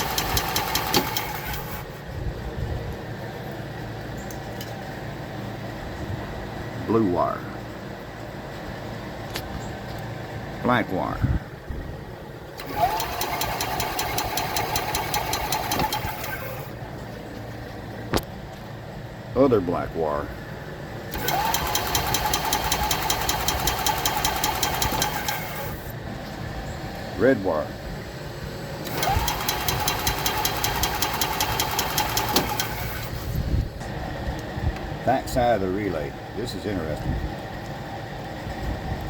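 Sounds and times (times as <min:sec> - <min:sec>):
rapid even ticking: 0:00.0 - 0:01.5, 0:12.6 - 0:16.5, 0:21.1 - 0:25.5, 0:28.9 - 0:32.8
engine cranking without firing: 0:00.0 - 0:02.0, 0:12.5 - 0:16.8, 0:21.1 - 0:26.0, 0:28.6 - 0:33.6.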